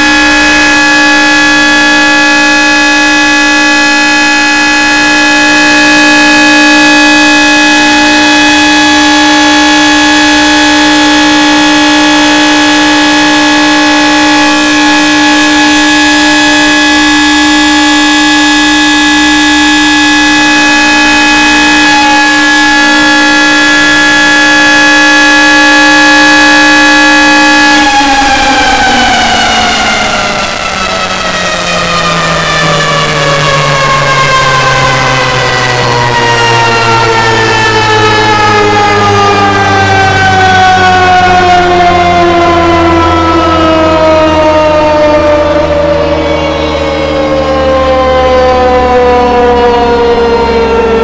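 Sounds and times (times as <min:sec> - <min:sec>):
tornado warning siren: 0:00.0 - 0:51.0.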